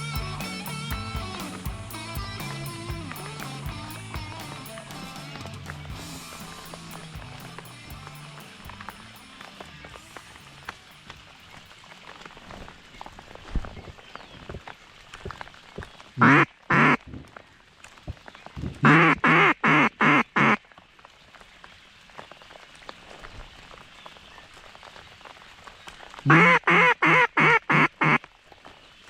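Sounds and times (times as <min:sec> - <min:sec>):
duck call quacks: 0:16.2 - 0:17.0, 0:18.8 - 0:20.6, 0:26.3 - 0:28.2.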